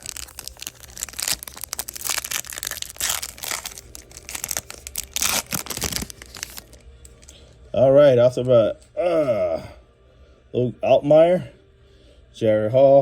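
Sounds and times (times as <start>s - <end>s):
wrapper tearing and crinkling: 0.0s - 7.3s.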